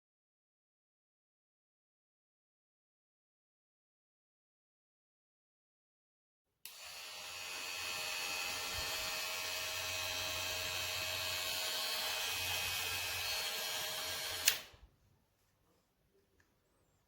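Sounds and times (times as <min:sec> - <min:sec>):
hair clipper running: 0:06.7 - 0:14.8
hair clipper switch click: 0:14.4 - 0:14.7.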